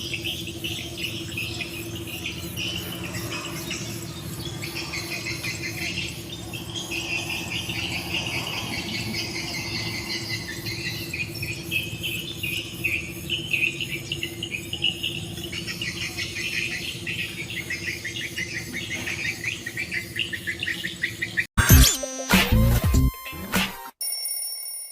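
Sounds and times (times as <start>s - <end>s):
small birds chirping: 0.0s - 21.5s
ringing tone: 24.0s - 24.9s.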